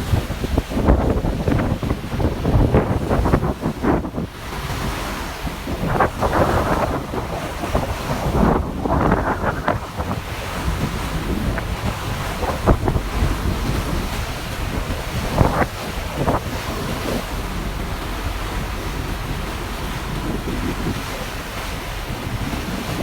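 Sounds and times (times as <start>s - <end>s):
water rushing past hull: 0.0s - 23.0s
wind buffeting microphone: 0.0s - 23.0s
steady low rumble: 5.1s - 22.7s.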